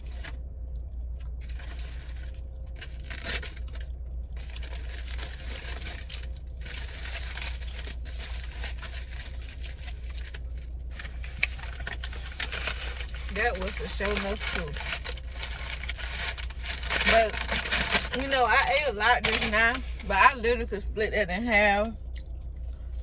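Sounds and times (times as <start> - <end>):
paper wrapper crinkling: 0.0 - 0.4, 1.4 - 20.6.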